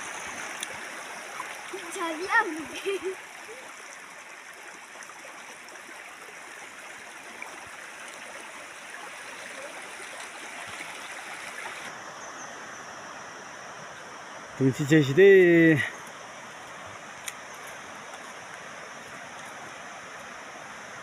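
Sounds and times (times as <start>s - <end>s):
river water rushing over rocks: 0.0s - 12.1s.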